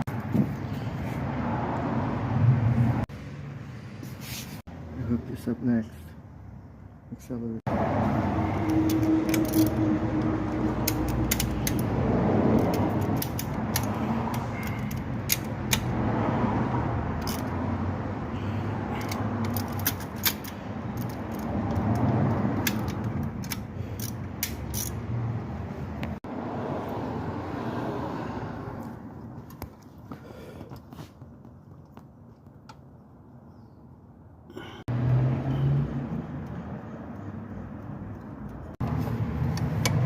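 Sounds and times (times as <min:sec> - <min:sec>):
metallic clicks and rattles of tools: 0:08.6 - 0:15.9, 0:17.2 - 0:17.5, 0:18.9 - 0:25.0.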